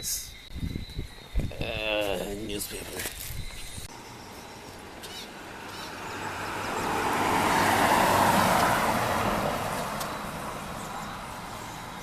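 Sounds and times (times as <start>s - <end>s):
road vehicle passing by: 3.9s - 12.0s.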